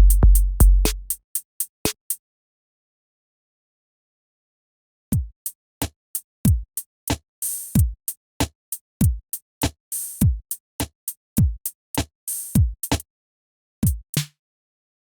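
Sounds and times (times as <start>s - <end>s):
deep kick drums: 0.0s - 1.1s
electronic drum beat: 0.0s - 1.2s, 7.8s - 8.0s, 9.0s - 9.2s, 10.2s - 10.5s, 11.4s - 11.7s, 13.8s - 14.0s.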